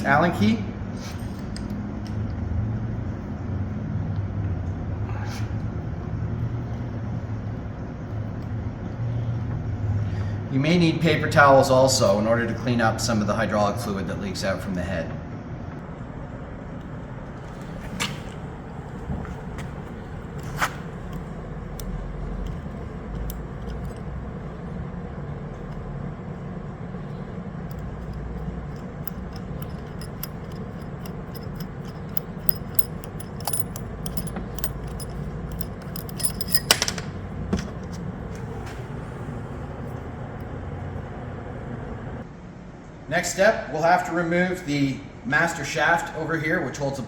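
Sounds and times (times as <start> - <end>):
low background hum: 0.0 - 47.0
metallic clicks and scrapes of tools: 20.4 - 24.4, 27.1 - 37.0.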